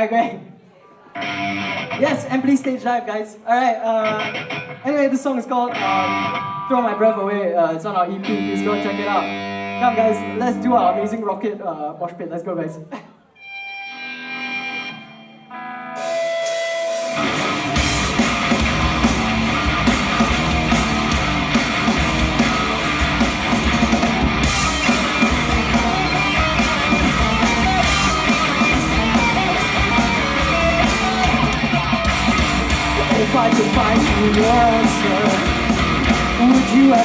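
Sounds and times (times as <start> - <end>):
electric guitars: 1.1 - 2.8, 3.9 - 7.2, 7.8 - 11.2, 13.4 - 37.0
drums: 4.0 - 6.7, 15.8 - 37.0
bass guitar: 17.0 - 37.0.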